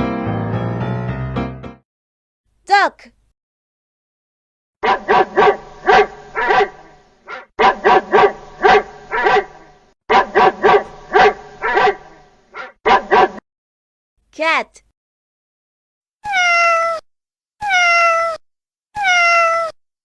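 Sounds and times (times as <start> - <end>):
dog barking: 4.8 - 13.4.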